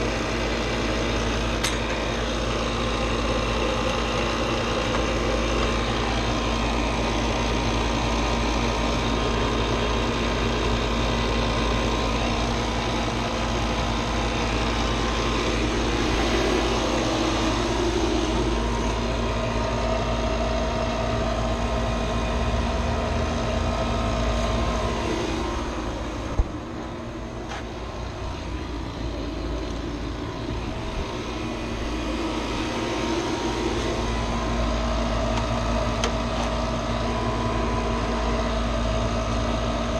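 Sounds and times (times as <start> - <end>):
machine motor humming: 0.0 - 39.9.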